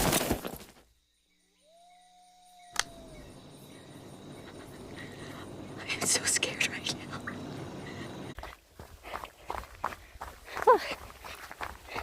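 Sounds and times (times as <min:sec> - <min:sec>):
outdoor background noise: 0:00.0 - 0:12.0
sharp click: 0:02.7 - 0:03.0.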